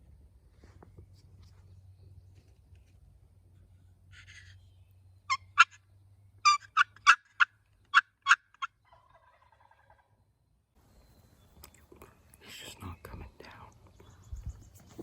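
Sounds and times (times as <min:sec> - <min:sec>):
turkey gobbling: 0:05.3 - 0:05.8, 0:06.4 - 0:10.2.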